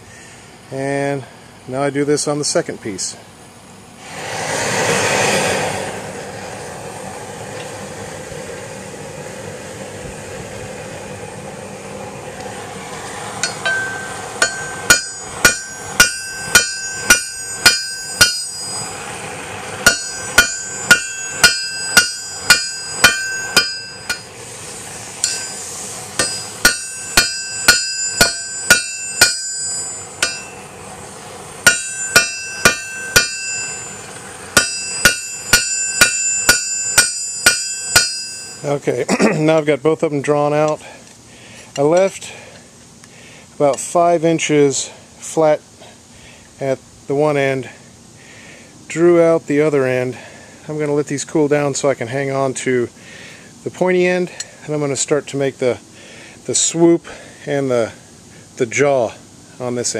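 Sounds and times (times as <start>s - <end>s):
torch rushing: 3.9s - 38.4s
hammer striking steel on anvil: 13.4s - 18.9s, 19.8s - 24.3s, 25.2s - 25.6s, 26.2s - 30.6s, 31.6s - 38.7s.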